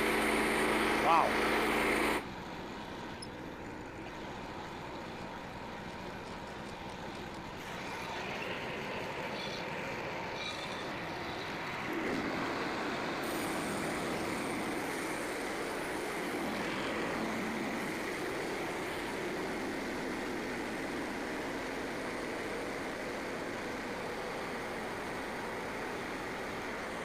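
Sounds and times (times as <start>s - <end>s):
bandsaw mill sawing log: 0.0s - 2.3s, 11.6s - 27.0s.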